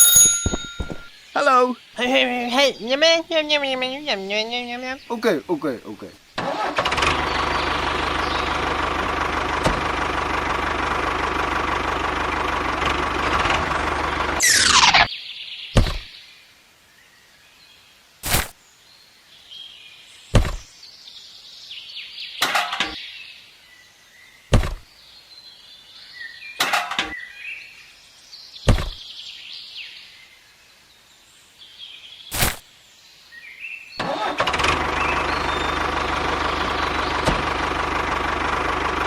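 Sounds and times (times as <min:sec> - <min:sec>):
faint high chirping: 0:00.0 - 0:05.2
sharp knocks: 0:00.2 - 0:01.1, 0:15.8 - 0:16.1, 0:20.4 - 0:20.7, 0:24.5 - 0:24.8, 0:28.7 - 0:29.0.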